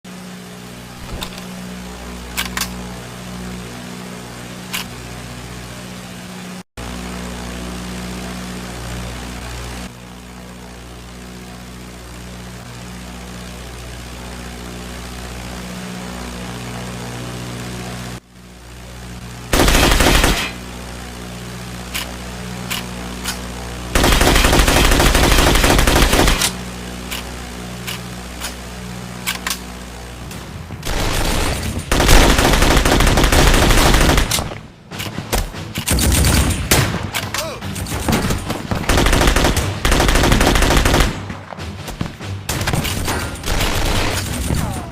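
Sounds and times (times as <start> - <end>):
low drone with tones: 0.1 - 44.9
submachine gun firing: 19.5 - 20.6, 23.9 - 26.6, 30.8 - 34.6, 37.9 - 41.6, 42.5 - 44.6.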